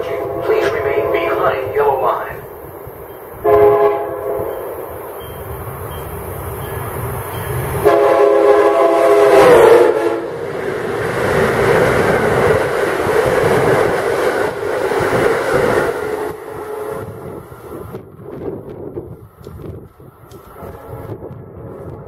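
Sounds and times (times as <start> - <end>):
train horn blast: 0.0 - 1.8, 3.4 - 4.7, 7.8 - 10.4, 16.1 - 17.2, 20.6 - 22.0
train rushing and clattering past: 0.0 - 22.0.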